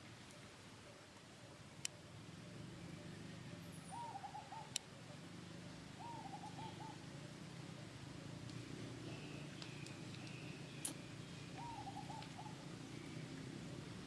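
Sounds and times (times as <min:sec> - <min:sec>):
animal hooting call: 0:03.9 - 0:04.8.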